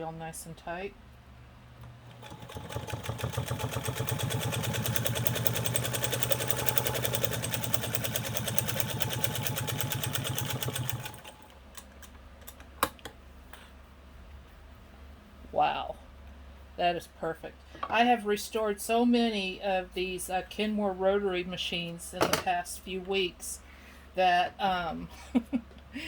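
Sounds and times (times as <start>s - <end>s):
sewing machine stitching leather: 2.0s - 11.5s.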